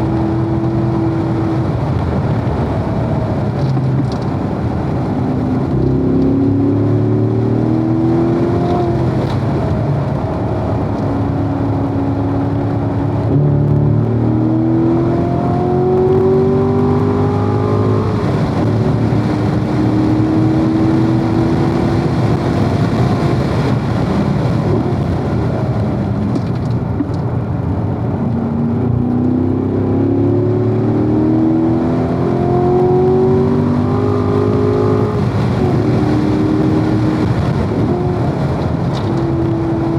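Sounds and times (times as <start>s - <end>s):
car engine accelerating hard: 0.0s - 39.9s.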